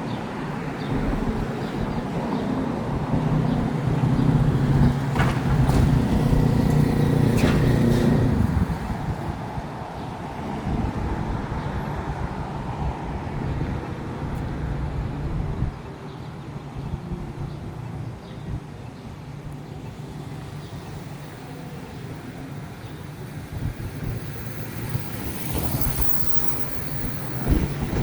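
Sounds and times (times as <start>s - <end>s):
general traffic hum: 0.0s - 28.0s
vehicle engine running close: 0.9s - 9.6s.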